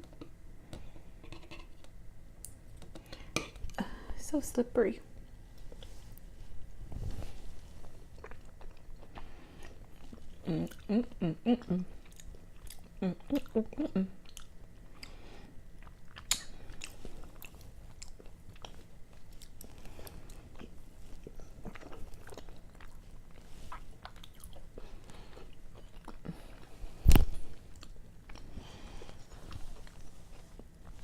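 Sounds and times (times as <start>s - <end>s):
person chewing: 7.7s - 31.0s.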